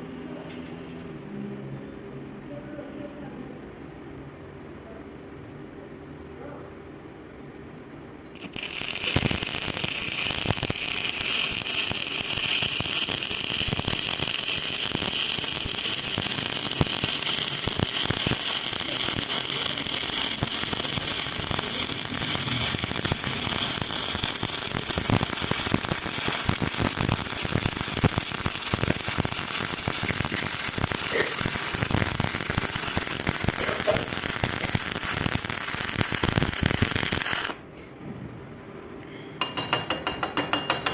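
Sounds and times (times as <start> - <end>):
welding arc crackling and sizzling: 8.4 - 37.7.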